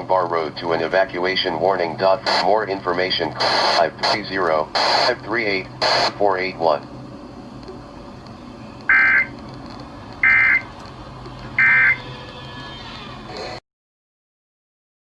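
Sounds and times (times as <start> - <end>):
radio hiss: 0.0 - 9.4
screechy two-tone data bursts: 8.9 - 9.3, 10.2 - 10.7, 11.6 - 12.1.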